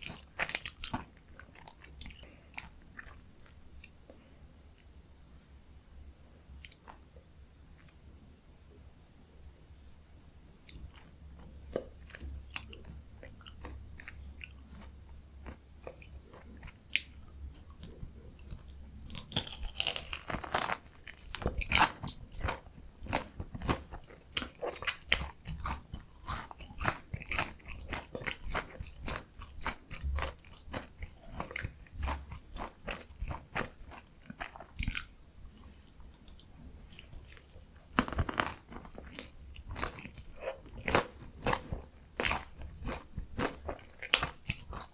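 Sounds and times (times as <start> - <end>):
chewing: 10.7 - 44.9
crunchy bites: 19.1 - 35.2, 36.3 - 44.9.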